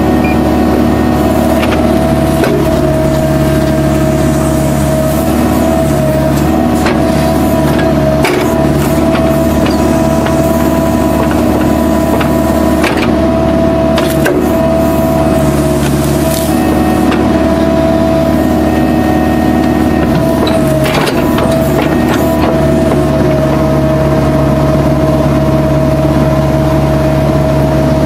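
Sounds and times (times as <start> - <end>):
excavator engine drone: 0.0 - 28.0
high steady tone: 0.2 - 0.6.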